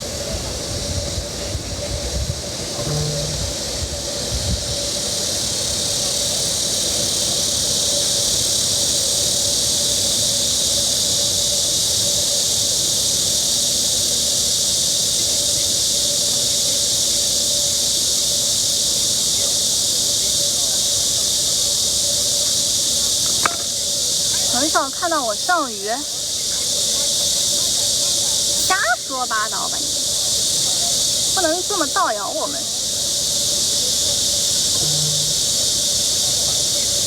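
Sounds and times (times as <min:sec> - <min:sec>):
insects droning: 0:00.0 - 0:37.0
faint steady hum: 0:02.6 - 0:04.0, 0:34.6 - 0:36.2.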